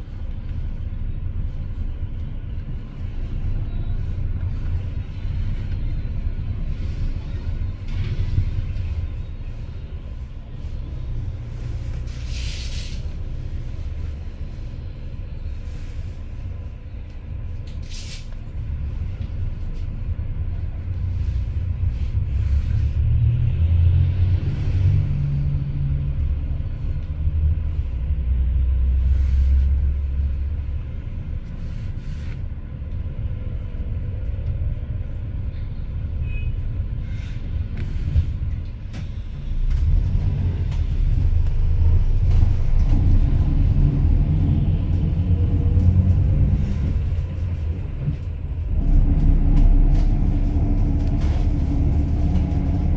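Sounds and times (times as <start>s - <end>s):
vehicle engine running: 37.5s - 52.9s.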